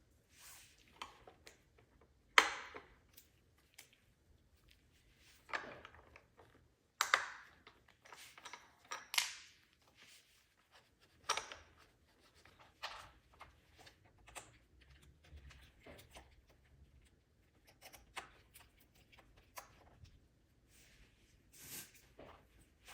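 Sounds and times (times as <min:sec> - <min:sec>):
plastic parts clicking and scraping: 0:05.4 - 0:10.2.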